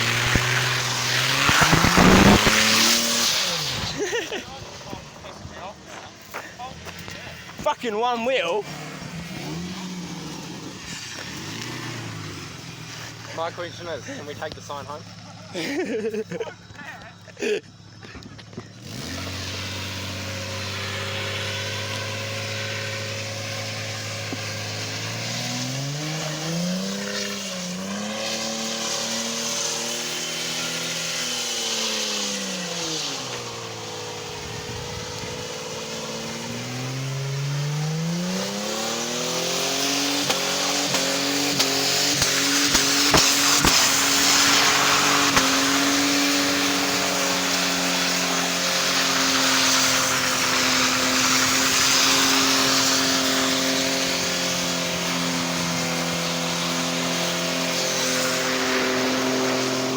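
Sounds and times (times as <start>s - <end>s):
car engine revving: 0.0s - 17.2s, 17.8s - 59.9s
tyres spinning hiss: 0.0s - 17.4s, 40.3s - 59.9s.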